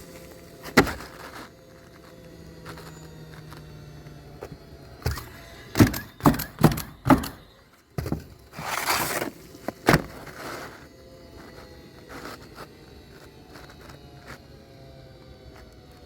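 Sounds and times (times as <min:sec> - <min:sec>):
shingle scraping rustle: 0:00.0 - 0:03.2, 0:07.3 - 0:10.8
nails knocked into roofing shingles: 0:05.0 - 0:08.7.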